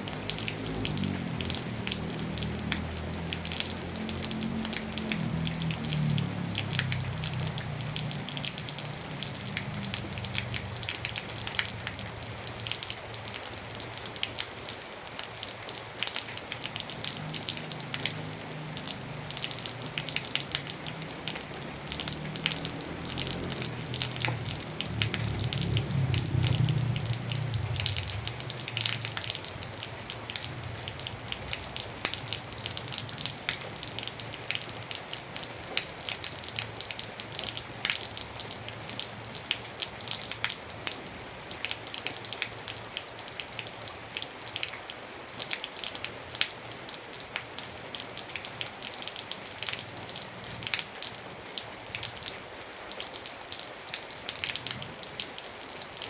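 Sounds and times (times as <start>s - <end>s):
steady rain: 0.0s - 56.0s
drips pattering on a surface: 0.1s - 14.3s.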